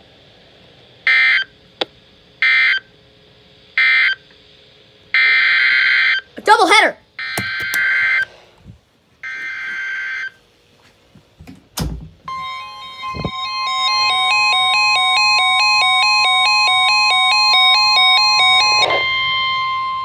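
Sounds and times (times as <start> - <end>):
warning alarm tone: 7.2 - 8.3, 12.3 - 20.0
alternating beeps: 12.3 - 20.0.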